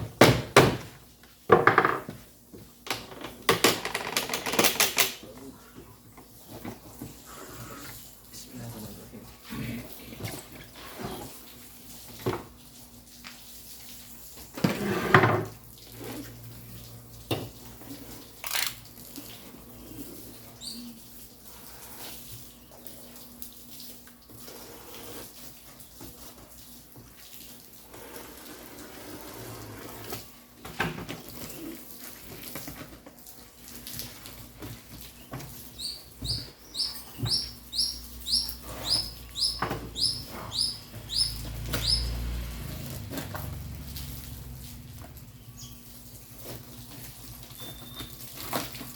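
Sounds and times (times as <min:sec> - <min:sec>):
small bird chirping: 0:35.2 - 0:42.1, 0:47.6 - 0:48.2.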